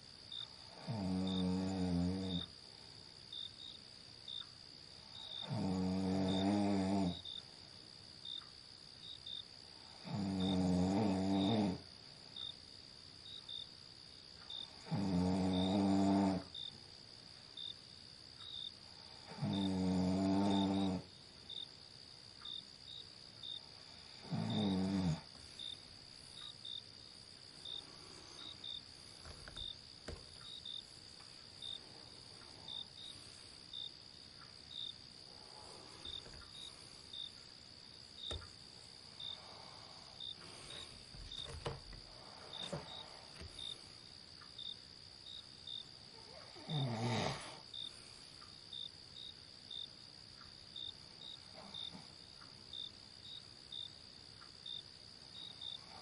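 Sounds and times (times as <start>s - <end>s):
insect chirps: 0.0s - 56.0s
insects droning: 0.0s - 56.0s
person snoring loudly: 0.7s - 2.5s, 5.4s - 7.2s, 10.0s - 11.8s, 14.8s - 16.5s, 19.2s - 21.1s, 24.2s - 25.3s, 46.5s - 47.6s.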